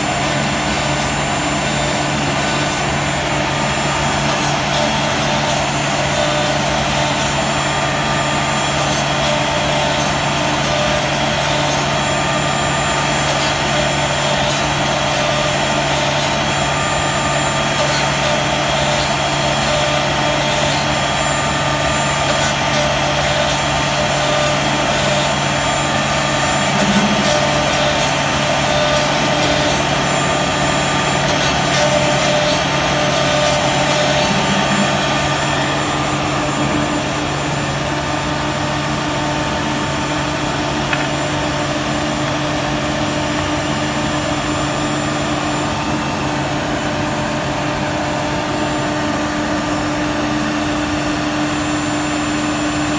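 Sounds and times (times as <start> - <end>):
router spindle cutting wood: 0.0 - 40.2.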